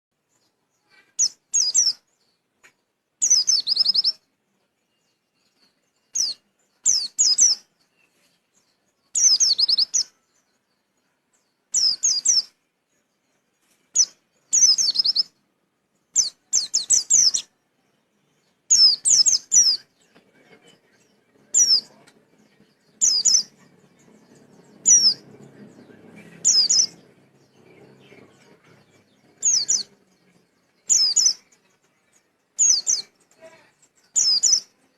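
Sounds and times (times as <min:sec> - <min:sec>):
bird twittering song: 0:00.2 - 0:34.9
faint low rumble: 0:21.2 - 0:30.7.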